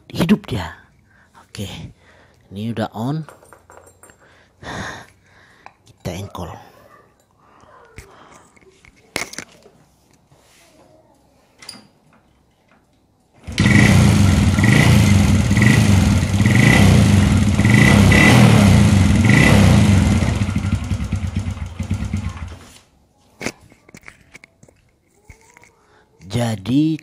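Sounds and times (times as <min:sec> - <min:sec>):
motorcycle engine kick-started: 0:13.4 - 0:22.7.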